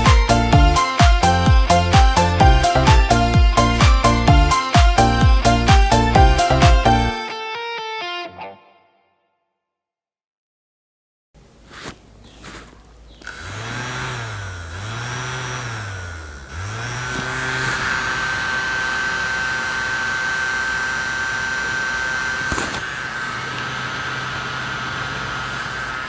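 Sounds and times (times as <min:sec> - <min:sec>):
small electric fan motor whining: 0:00.0 - 0:07.2, 0:13.2 - 0:26.0
low hum: 0:12.9 - 0:26.0.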